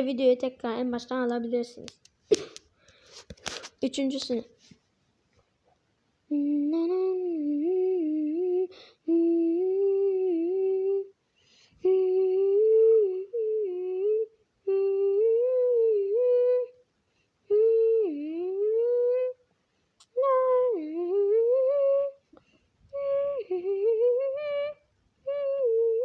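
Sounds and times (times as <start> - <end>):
person humming: 6.3 - 11.1, 11.8 - 16.8, 17.5 - 19.4, 20.1 - 22.2, 22.9 - 26.0.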